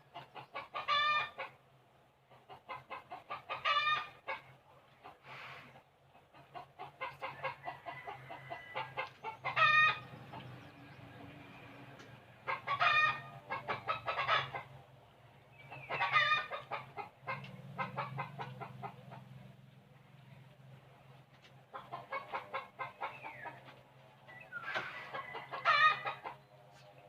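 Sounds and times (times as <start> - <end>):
chickens clucking: 0.0 - 27.0
chicken squawking: 0.2 - 1.6, 2.5 - 5.6, 12.5 - 14.8, 15.7 - 19.0, 24.5 - 26.4.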